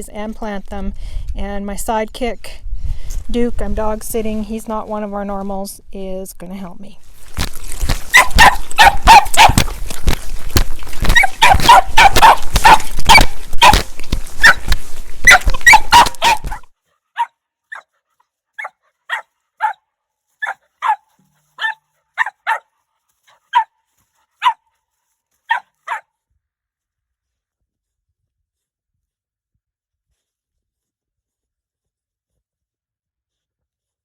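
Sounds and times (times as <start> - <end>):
dog barking: 8.1 - 9.8, 11.1 - 17.9, 18.6 - 23.8, 24.4 - 24.7, 25.5 - 26.1.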